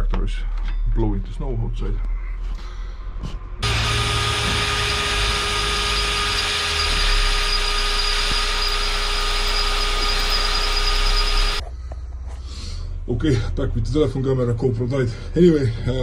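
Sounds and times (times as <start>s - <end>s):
angle grinder cutting metal: 3.6s - 11.6s.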